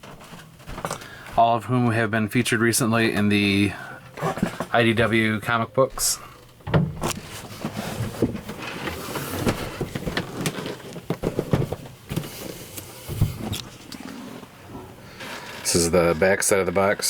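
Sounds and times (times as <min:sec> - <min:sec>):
rustling scrapes: 0:07.0 - 0:11.1, 0:12.1 - 0:17.0
cardboard packaging handled: 0:07.0 - 0:14.2.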